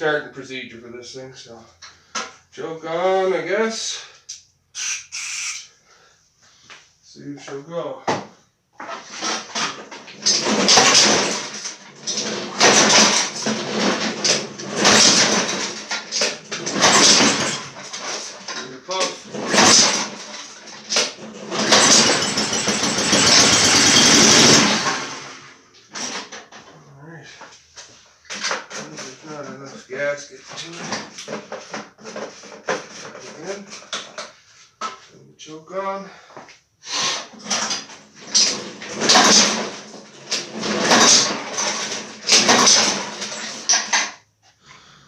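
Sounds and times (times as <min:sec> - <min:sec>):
mower engine pull-started and running: 0:08.8 - 0:26.4, 0:37.4 - 0:44.2
recoil starter rope whirring: 0:19.0 - 0:25.5, 0:38.2 - 0:43.8.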